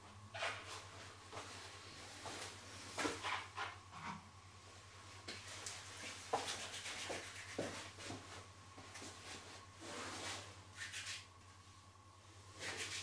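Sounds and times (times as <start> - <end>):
hands rubbing skin: 6.3 - 7.9.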